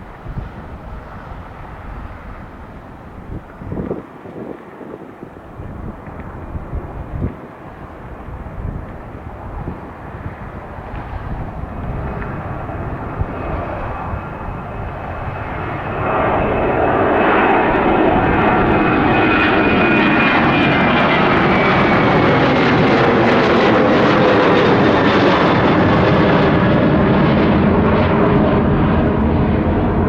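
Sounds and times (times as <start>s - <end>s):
high jet whine falling in pitch: 0.0s - 30.0s
jet engines roaring: 0.0s - 30.0s.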